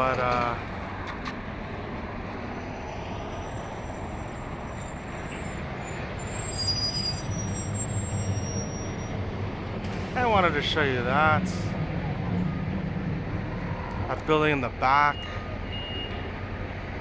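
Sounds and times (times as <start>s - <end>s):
heavy vehicle engine: 0.0s - 17.0s
street traffic: 0.0s - 17.0s
faint high whistling tones: 3.1s - 9.2s.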